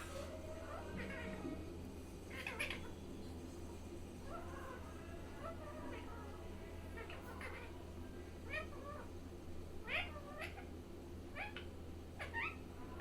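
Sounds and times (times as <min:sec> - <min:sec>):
parrot meowing: 0:02.3 - 0:03.0, 0:06.9 - 0:07.8, 0:08.4 - 0:09.1, 0:09.8 - 0:10.7, 0:11.3 - 0:13.0.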